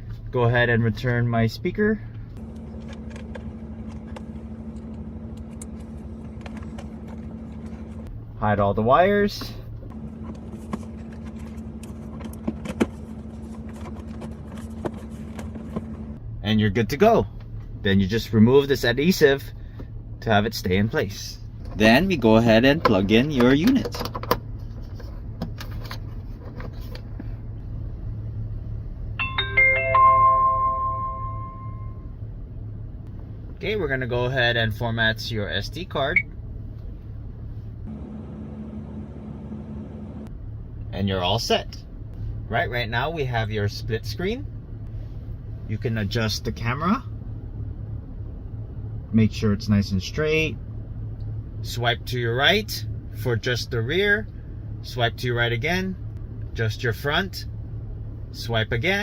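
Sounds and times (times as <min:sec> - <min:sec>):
low hum inside car: 0:00.0 - 0:59.0
power-on chime: 0:29.2 - 0:32.0.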